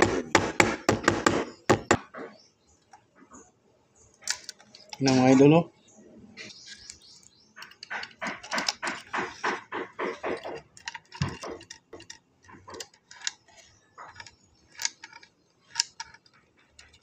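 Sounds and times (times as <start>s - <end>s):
light clicks and metallic rattles: 4.1s - 5.6s, 6.4s - 17.0s.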